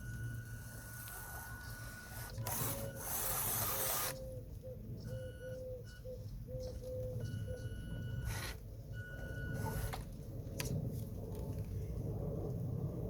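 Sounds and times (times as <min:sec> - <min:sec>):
small electric motors whirring: 0:00.2 - 0:04.3.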